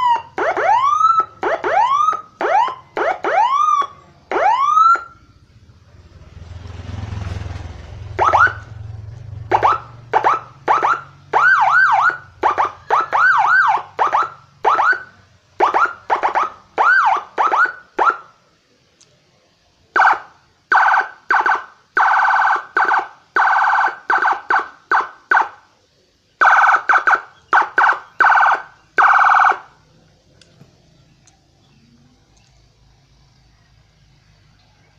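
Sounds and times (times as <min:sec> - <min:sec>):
siren blasts: 0:00.0 - 0:05.2, 0:07.9 - 0:18.3, 0:20.0 - 0:25.7, 0:26.4 - 0:29.8.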